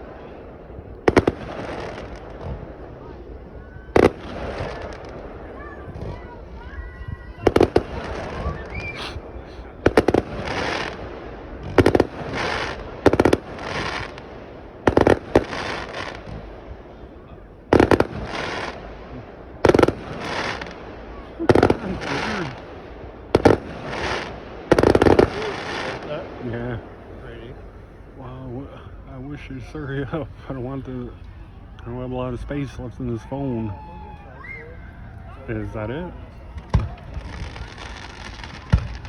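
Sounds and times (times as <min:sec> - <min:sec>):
fireworks bangs: 0:00.0 - 0:27.8, 0:36.4 - 0:39.0.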